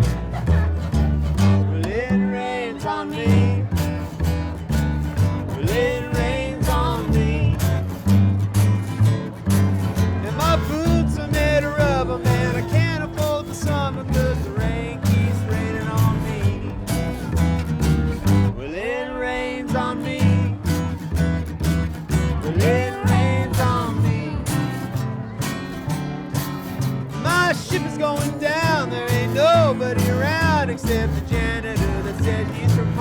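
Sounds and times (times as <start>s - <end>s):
steady bass beat: 0.0s - 2.3s, 3.2s - 33.0s
plucked guitar: 0.0s - 33.0s.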